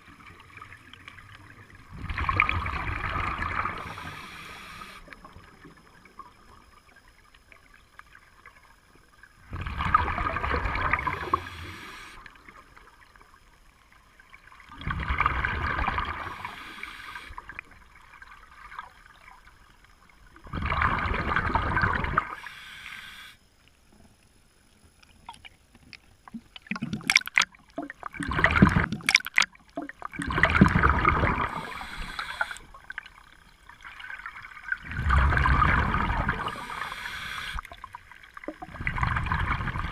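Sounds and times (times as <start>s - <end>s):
quiet inhalations: 3.7s - 5.3s, 11.1s - 12.6s, 16.1s - 17.7s, 22.2s - 24.2s, 31.4s - 33.0s, 36.1s - 37.8s
bubbling exhalation underwater: 26.6s - 31.9s, 34.8s - 36.8s.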